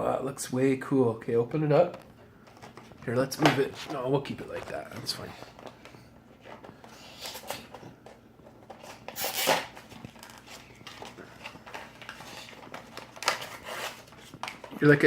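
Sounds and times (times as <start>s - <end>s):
packaging being torn open: 8.9s - 11.0s.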